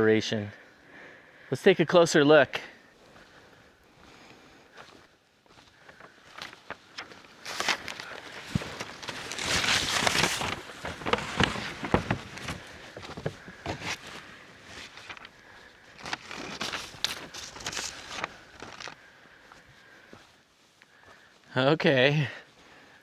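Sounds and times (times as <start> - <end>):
rustling: 4.8 - 19.6
footsteps on rough ground: 4.8 - 20.3.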